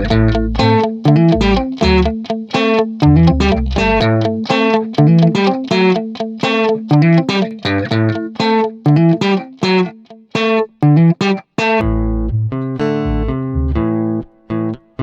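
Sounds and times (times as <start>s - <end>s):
low bass notes: 0.0s - 2.2s, 3.0s - 4.4s, 11.8s - 14.3s
guitar plucking repeating notes: 0.0s - 15.0s.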